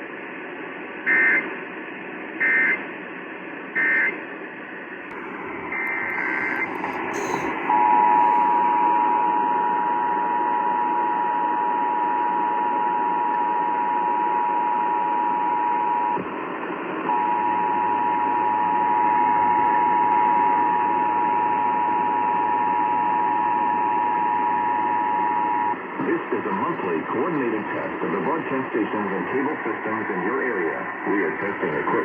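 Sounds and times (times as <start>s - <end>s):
radio receiver hiss: 4.9s - 32.0s
digital data-burst warble: 5.7s - 7.5s
two-tone attention signal: 5.7s - 9.8s.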